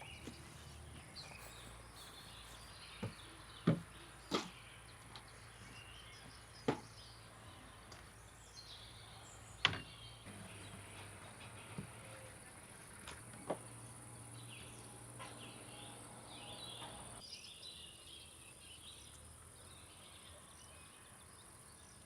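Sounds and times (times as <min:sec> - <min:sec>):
faint bird chirps: 0:01.1 - 0:04.8.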